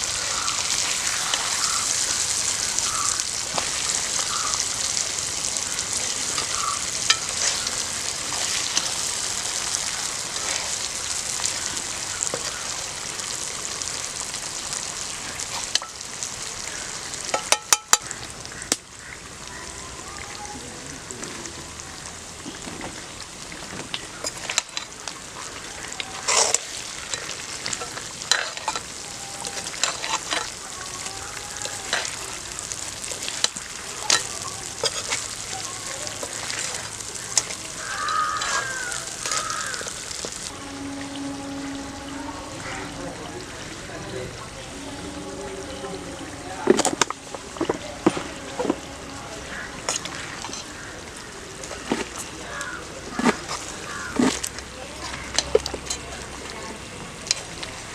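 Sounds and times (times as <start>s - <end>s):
meat sizzling in a pan: 0.0s - 41.5s.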